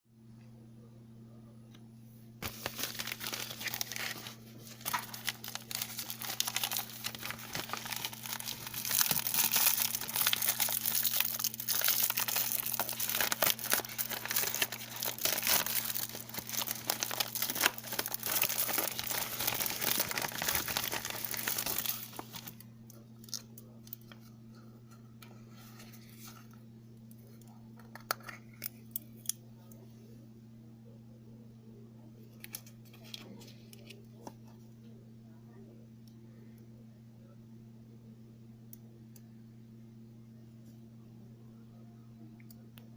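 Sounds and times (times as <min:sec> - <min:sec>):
steady low hum: 0:00.1 - 0:42.9
packaging tearing and crinkling: 0:02.4 - 0:22.6.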